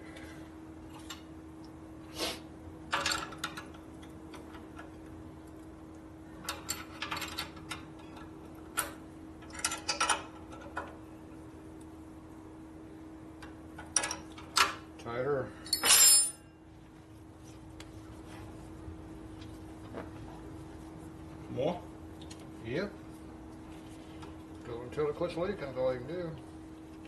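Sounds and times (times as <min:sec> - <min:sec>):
steady low hum: 0:00.0 - 0:27.0
hand tools clinking on metal: 0:15.7 - 0:16.4.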